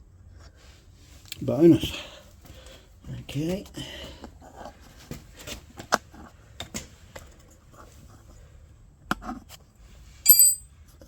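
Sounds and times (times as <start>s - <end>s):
ringing high metal clink: 10.3s - 10.6s
tools and parts clicking: 10.3s - 10.6s.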